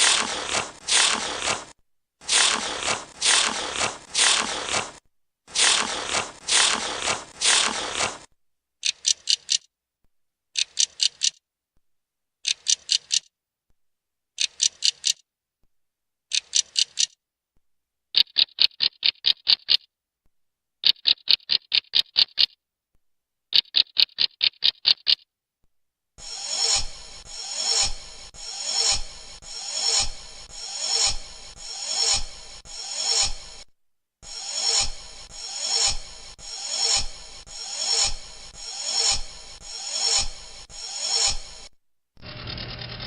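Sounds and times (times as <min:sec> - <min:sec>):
rasping scrape strokes: 0:00.0 - 0:08.3, 0:26.2 - 0:41.7
ringing ratchet-like clicks: 0:08.8 - 0:09.7, 0:10.6 - 0:11.4, 0:12.4 - 0:13.3, 0:14.4 - 0:15.2, 0:16.3 - 0:17.2, 0:26.2 - 0:33.6, 0:34.3 - 0:41.7
rapid high-pitched clicking: 0:26.2 - 0:33.6, 0:34.3 - 0:41.7.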